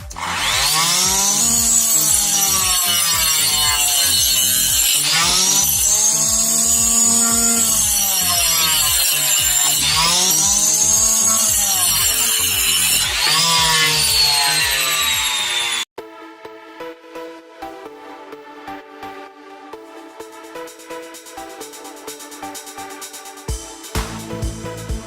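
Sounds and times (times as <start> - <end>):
quiet electronic music: 0.0 - 15.1, 16.0 - 25.0
circular saw cutting wood: 0.0 - 16.0.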